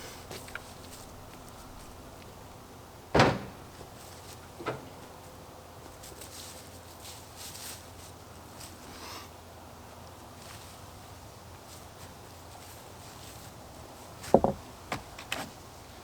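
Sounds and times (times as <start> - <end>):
knocks: 3.2 - 3.8, 14.3 - 14.6.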